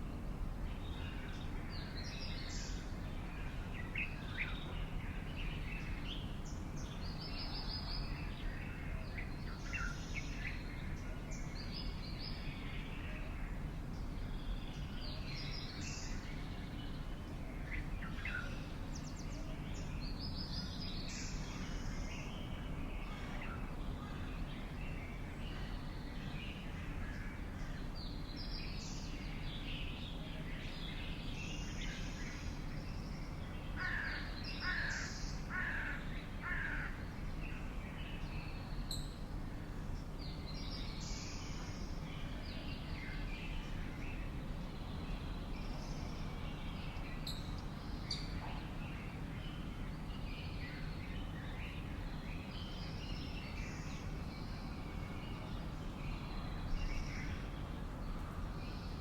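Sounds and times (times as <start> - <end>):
loud bird calls: 33.8 - 37.0.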